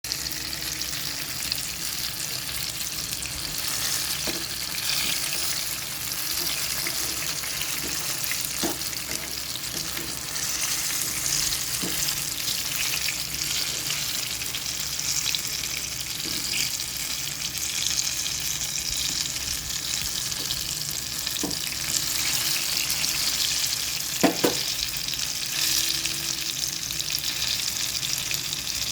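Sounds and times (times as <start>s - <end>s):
food sizzling in hot oil: 0.1s - 28.9s
utensil knocking against pan: 24.2s - 24.7s.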